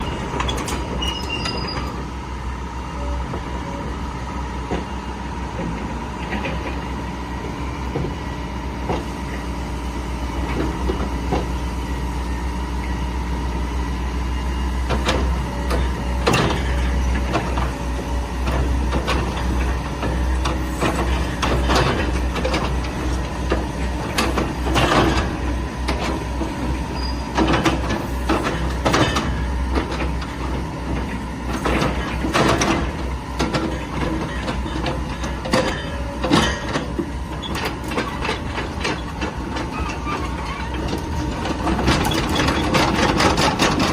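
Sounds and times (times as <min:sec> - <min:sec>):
diesel engine running: 0:00.0 - 0:43.9
metal clanks and knocks: 0:05.6 - 0:06.8, 0:27.3 - 0:43.9.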